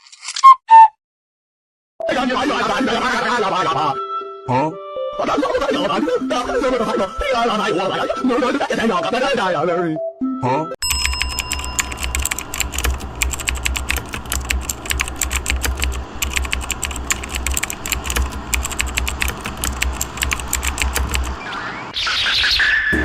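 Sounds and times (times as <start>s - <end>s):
rapid keyboard typing: 10.8s - 21.4s
steady low hum: 11.2s - 21.4s.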